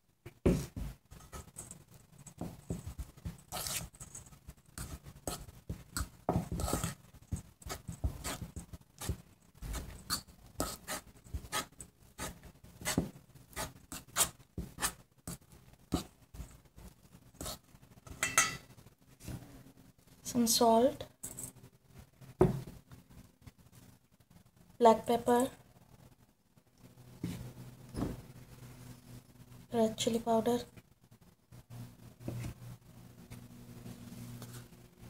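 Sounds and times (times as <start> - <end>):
spoon scraping a bowl: 1.1 - 15.0, 17.4 - 18.7.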